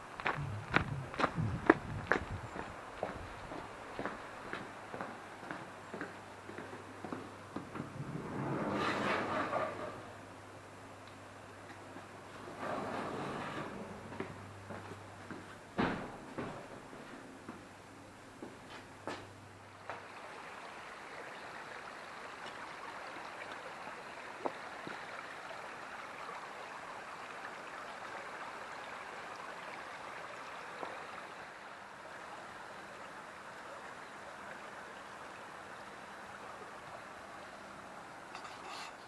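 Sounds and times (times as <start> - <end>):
river water rushing: 19.8 - 39.0.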